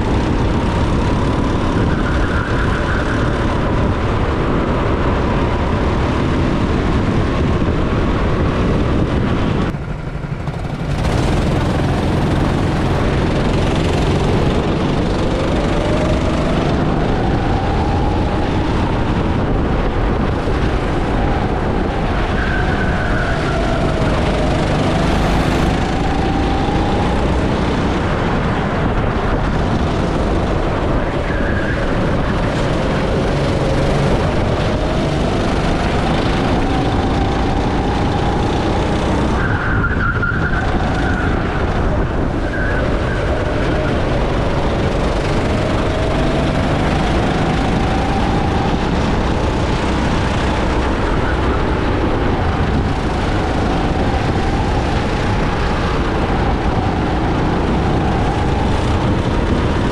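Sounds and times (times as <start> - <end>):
go-kart engines racing: 0.0 - 59.9
heavy rush of noise: 5.8 - 39.4.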